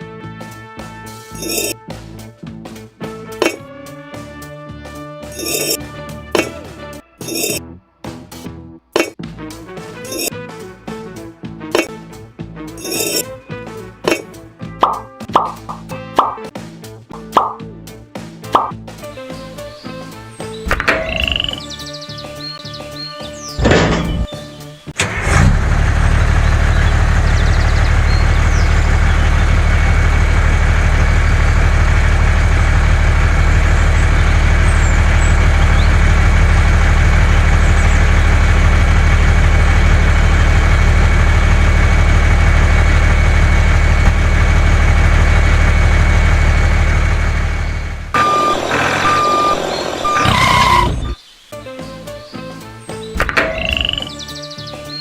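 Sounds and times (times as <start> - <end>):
truck engine running: 1.4 - 4.0, 5.2 - 7.6, 10.9 - 19.1, 20.1 - 51.2, 53.2 - 54.2
reversing alarm beeps: 48.2 - 51.2.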